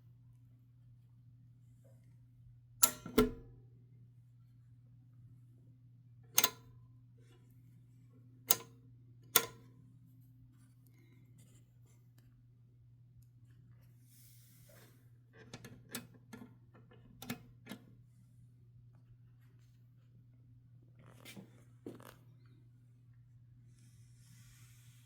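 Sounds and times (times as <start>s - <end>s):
typewriter light clicks: 2.8s - 3.4s, 6.4s - 6.6s, 9.4s - 9.6s.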